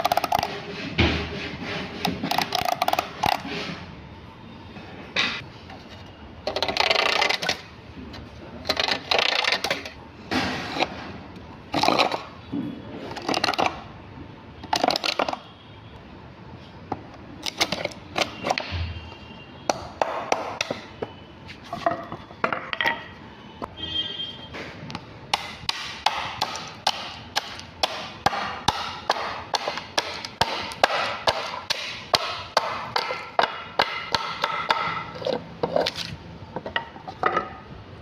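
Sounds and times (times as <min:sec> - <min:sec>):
scraping strokes on wood: 0:00.0 - 0:04.0.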